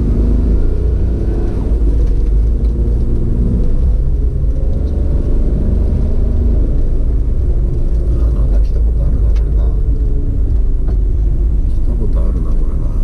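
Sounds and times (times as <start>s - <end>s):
road noise: 0.0s - 13.0s
vehicle engine rumble: 0.0s - 13.0s.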